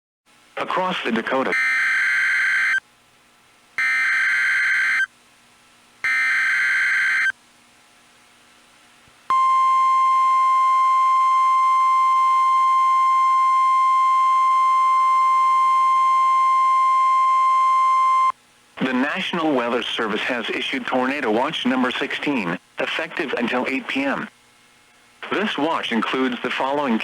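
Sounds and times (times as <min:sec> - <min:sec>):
steady alarm tone: 0:01.5 - 0:02.8, 0:03.8 - 0:05.1, 0:06.0 - 0:07.4.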